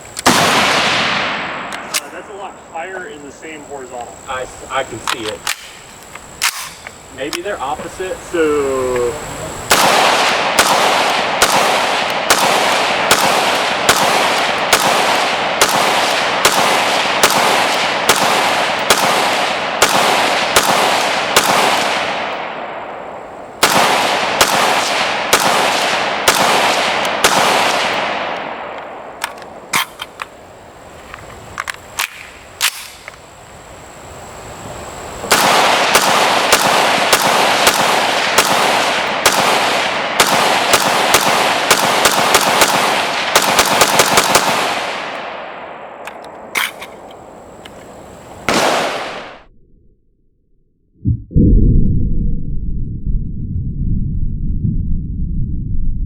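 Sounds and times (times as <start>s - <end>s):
rifle shots with ringing echo: 0.2s - 2.6s, 4.7s - 7.5s, 9.7s - 30.3s, 31.9s - 33.2s, 35.3s - 47.4s, 48.5s - 49.5s.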